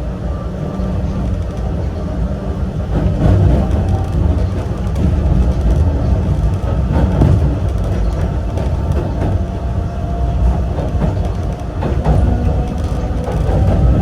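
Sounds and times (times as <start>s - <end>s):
electric train rumbling: 0.0s - 14.0s
wheels knocking on rails: 2.8s - 9.6s, 10.4s - 14.0s.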